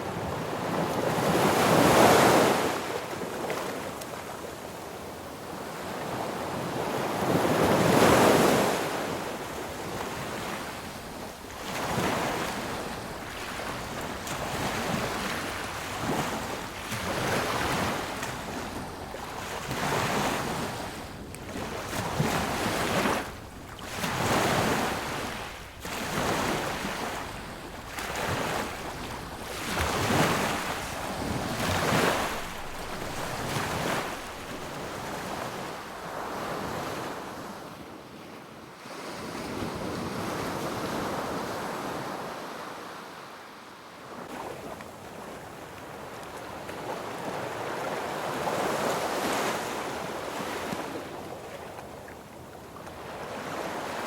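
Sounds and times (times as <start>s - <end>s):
sea waves breaking on beach: 0.0s - 37.7s, 44.1s - 54.0s.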